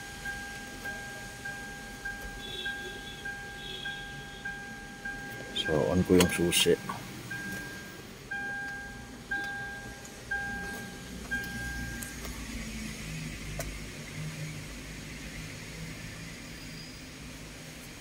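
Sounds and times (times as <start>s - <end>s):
two-tone dashboard warning beep: 0.0s - 12.2s
low steady hum: 0.0s - 15.4s.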